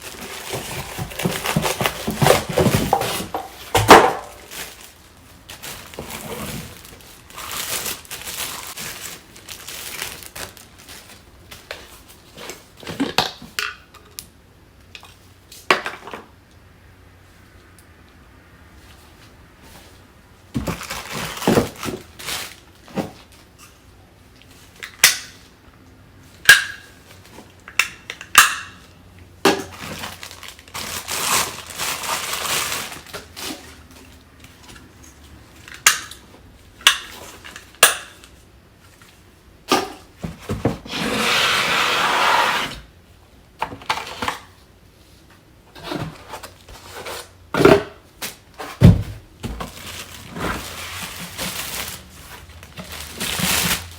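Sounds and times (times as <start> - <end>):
packaging rustling: 0.0 - 12.7, 20.6 - 23.5, 29.7 - 34.7, 48.2 - 53.9.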